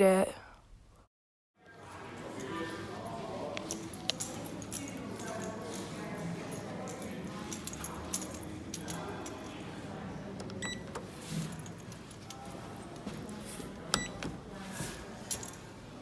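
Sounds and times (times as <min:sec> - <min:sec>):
murmur of voices: 0:01.6 - 0:16.0
footsteps: 0:11.2 - 0:15.6.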